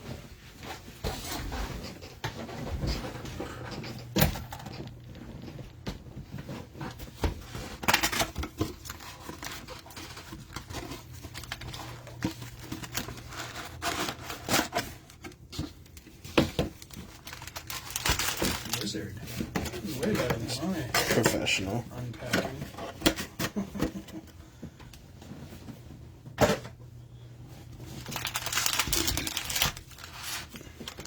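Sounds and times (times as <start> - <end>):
plastic wrap and cardboard crinkling: 4.4 - 23.8, 27.6 - 31.0.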